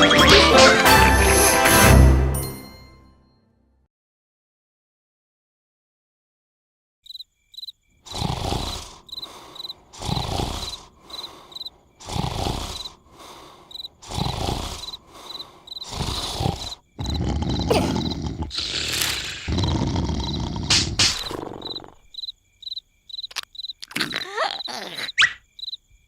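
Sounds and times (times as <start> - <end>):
crickets chirping: 7.0 - 26.0
cartoon character snoring: 8.1 - 22.1, 23.8 - 25.3.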